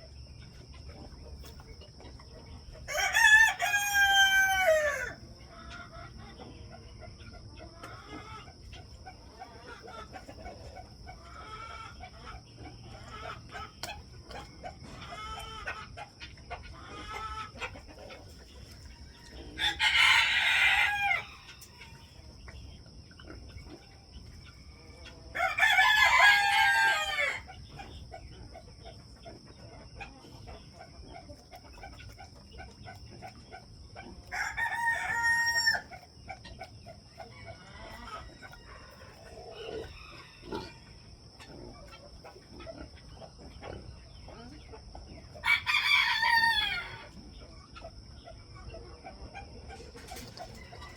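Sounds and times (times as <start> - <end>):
chicken clucking: 0.0 - 50.9
roosters crowing: 2.7 - 5.3, 18.8 - 22.3, 24.6 - 28.6, 34.0 - 42.0, 45.4 - 47.2.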